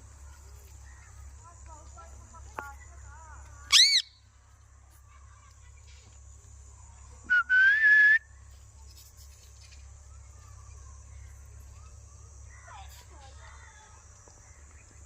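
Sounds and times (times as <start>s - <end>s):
parrot whistling: 3.7s - 4.2s.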